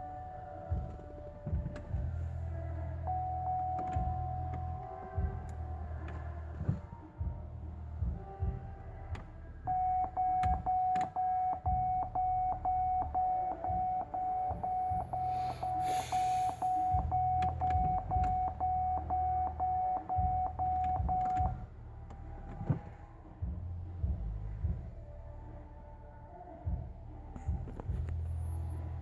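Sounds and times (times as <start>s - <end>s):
electronic warning chime beeping: 3.0s - 4.8s, 9.7s - 21.6s.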